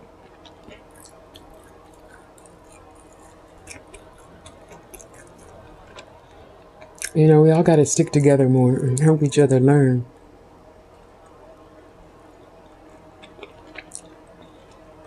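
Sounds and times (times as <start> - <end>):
low room hum: 0.0 - 15.0
faint chewing: 0.2 - 7.2, 12.3 - 15.0
wet mouth clicks and smacks: 0.3 - 4.0, 13.2 - 14.1.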